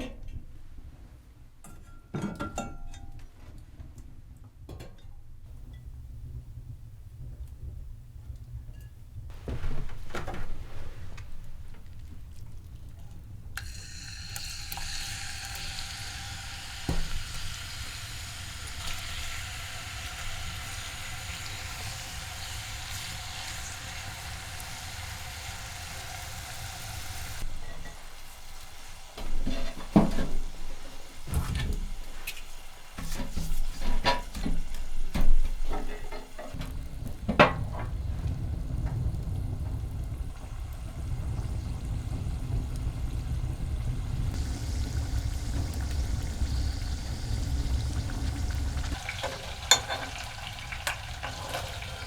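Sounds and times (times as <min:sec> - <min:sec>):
knocks and clatter of utensils: 0:01.6 - 0:03.4, 0:04.7 - 0:05.9, 0:29.2 - 0:32.4, 0:33.0 - 0:36.7, 0:49.0 - 0:52.0
food sizzling in a hot pan: 0:13.6 - 0:33.0, 0:39.5 - 0:52.0.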